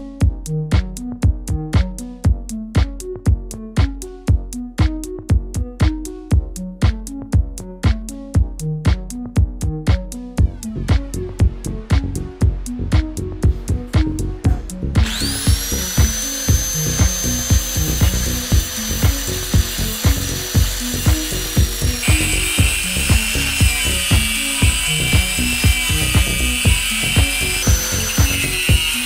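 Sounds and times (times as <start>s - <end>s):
electronic music with steady beat: 0.0s - 29.0s
power tool whining: 15.0s - 29.0s.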